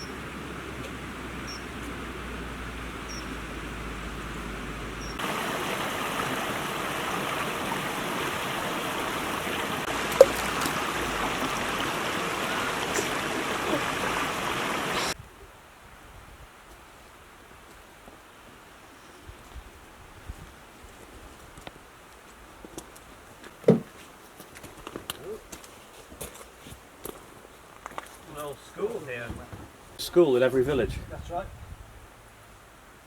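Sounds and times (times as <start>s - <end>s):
river water running over rocks: 0.0s - 15.2s.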